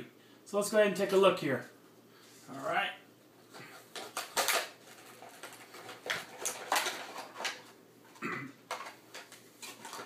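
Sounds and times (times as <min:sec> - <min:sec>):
packaging rustling: 0:03.5 - 0:10.0
packaging clicks and knocks: 0:03.9 - 0:07.7, 0:08.7 - 0:10.0.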